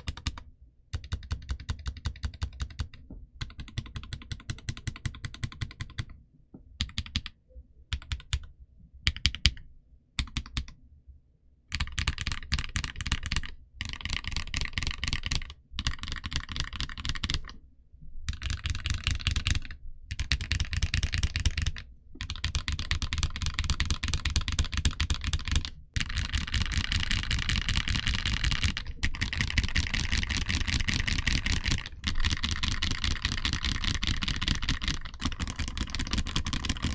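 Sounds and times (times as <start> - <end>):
keyboard typing: 0.0 - 6.1, 6.8 - 7.3, 7.9 - 8.5, 18.3 - 36.9.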